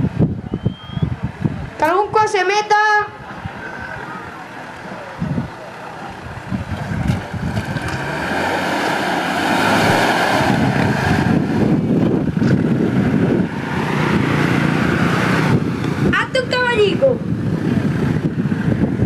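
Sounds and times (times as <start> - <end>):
engine running hard: 3.1 - 19.0
water splashing: 6.6 - 16.0.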